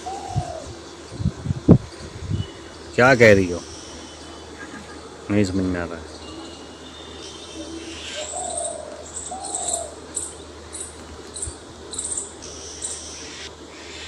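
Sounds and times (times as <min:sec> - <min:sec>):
dove cooing: 0:00.0 - 0:01.0, 0:07.5 - 0:14.0
small birds chirping: 0:00.0 - 0:14.0.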